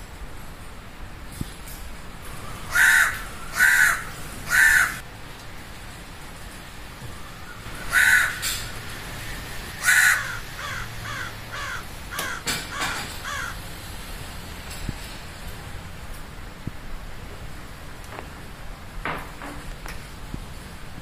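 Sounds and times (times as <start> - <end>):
crow cawing: 2.7 - 5.0, 7.8 - 8.7, 9.8 - 13.6.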